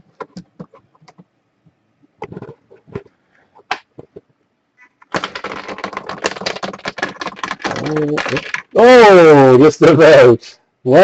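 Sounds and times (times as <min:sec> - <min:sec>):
chip clattering down pegs: 0:05.0 - 0:08.8.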